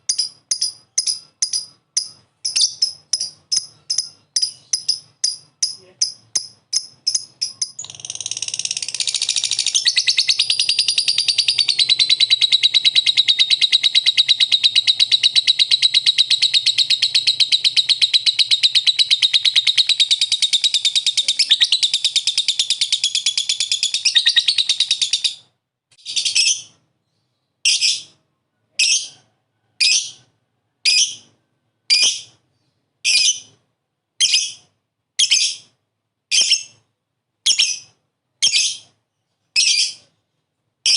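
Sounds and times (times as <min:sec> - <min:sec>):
lovebird trilling chatter: 0:00.1 - 0:25.4.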